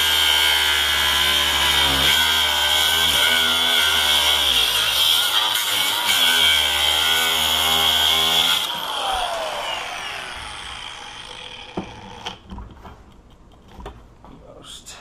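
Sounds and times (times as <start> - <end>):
power tool grinding metal: 0.0 - 12.4
tool winding down: 7.2 - 12.4.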